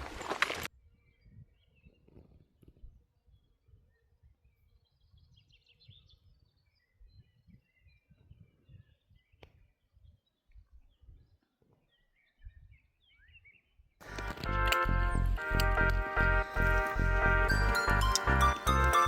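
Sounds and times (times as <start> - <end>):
faint birdsong: 0.8 - 14.3.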